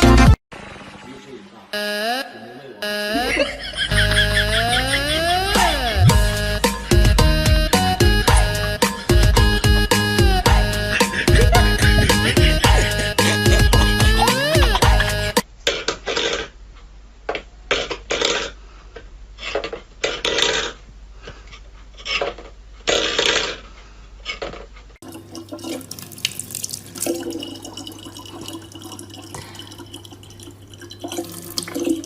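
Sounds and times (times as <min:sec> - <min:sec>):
water running: 0:25.0 - 0:32.0
water splashing: 0:25.0 - 0:32.0.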